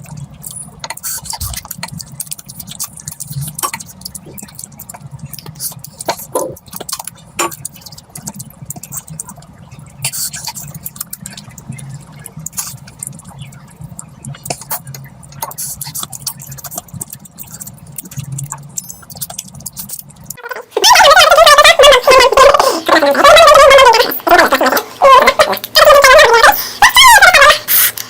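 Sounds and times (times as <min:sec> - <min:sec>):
wet chewing and smacks: 0:00.0 - 0:20.4
low steady hum: 0:00.0 - 0:28.0.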